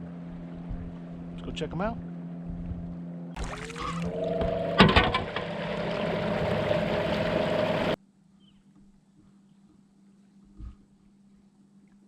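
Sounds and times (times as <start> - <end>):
rising drive whine: 0.0 - 8.0
rushing water: 3.4 - 8.0.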